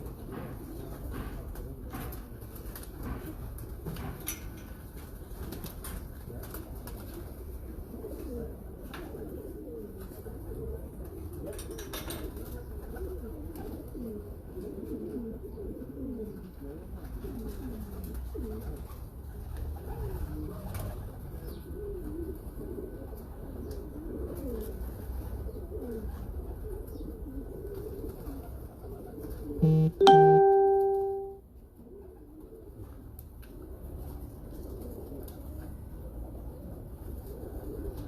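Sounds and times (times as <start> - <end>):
pigeons cooing: 6.8 - 29.6, 33.6 - 38.0
loud ringing tone: 29.6 - 31.4.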